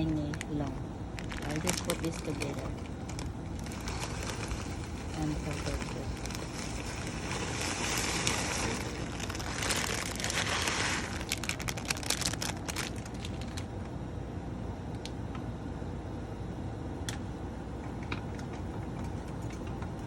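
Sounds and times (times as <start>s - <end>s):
plastic packaging crinkling: 0.0s - 13.8s
low background noise: 0.0s - 20.0s.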